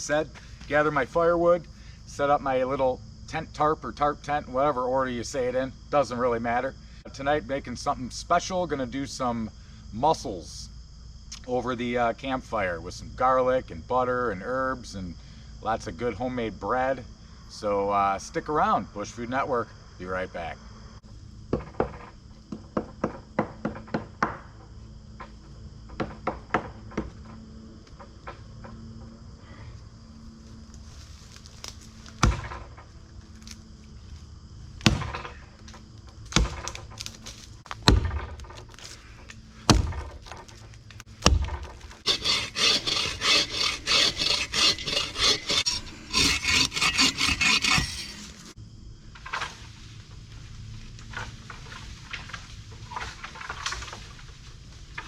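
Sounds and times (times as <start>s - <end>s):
axe chopping wood: 32.2s - 32.8s, 34.8s - 35.4s, 36.2s - 39.0s, 39.6s - 42.2s
saw rasping through wood: 42.0s - 48.6s.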